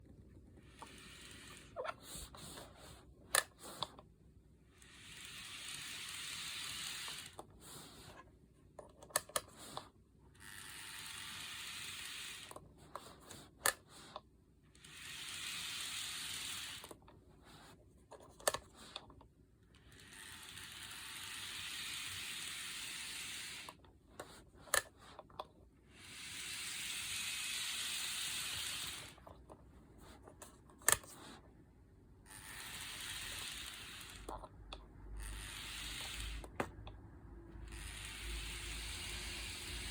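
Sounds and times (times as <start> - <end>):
geared mechanism grinding: 32.3 - 34.4.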